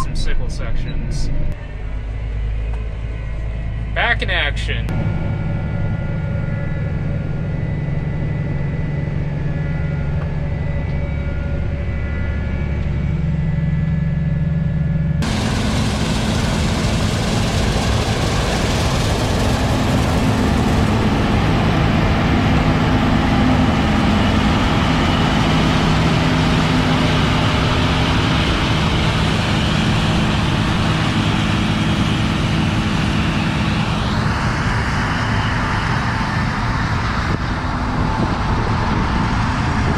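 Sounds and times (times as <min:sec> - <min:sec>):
combine harvester engine hum: 0:00.0 - 0:09.6, 0:15.2 - 0:39.9
rising whine: 0:04.9 - 0:39.9
loud hissing machine noise: 0:15.2 - 0:34.2.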